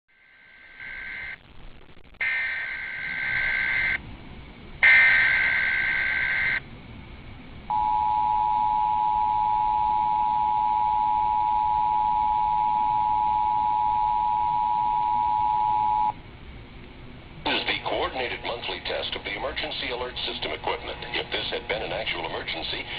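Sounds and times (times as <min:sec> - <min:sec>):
digital header data bursts: 0:02.2 - 0:04.0, 0:04.8 - 0:06.6.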